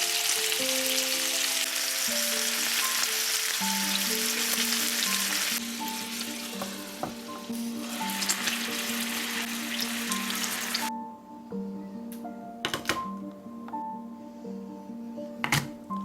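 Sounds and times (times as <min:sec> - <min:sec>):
food sizzling in a pan: 0:00.0 - 0:10.9.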